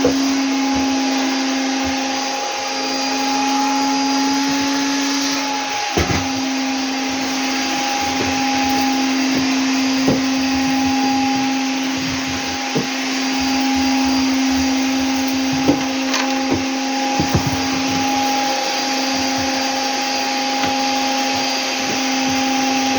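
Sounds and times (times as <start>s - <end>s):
vacuum cleaner running: 0.0s - 22.9s.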